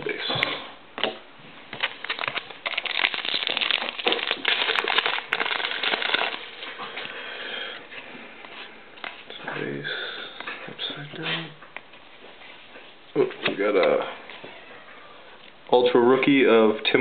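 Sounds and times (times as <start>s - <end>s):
trading card pack crinkling: 1.7s - 6.9s.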